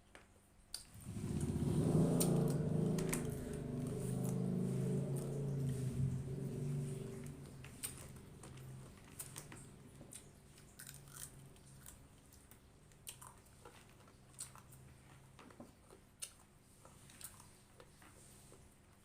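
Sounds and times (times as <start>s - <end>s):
person chewing food: 7.0s - 18.7s.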